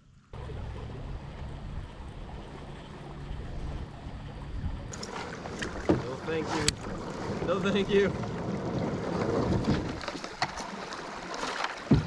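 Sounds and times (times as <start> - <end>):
low rumble: 0.0 - 5.2
river water moving: 0.0 - 12.0
wind: 0.0 - 12.0.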